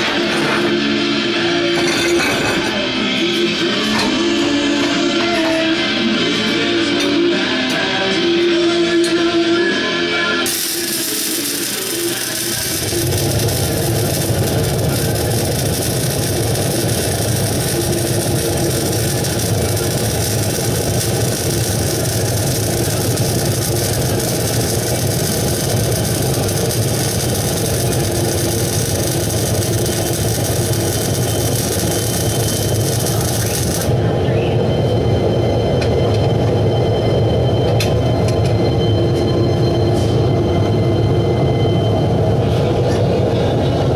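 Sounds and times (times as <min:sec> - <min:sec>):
welding equipment humming and hissing: 0:10.4 - 0:34.1.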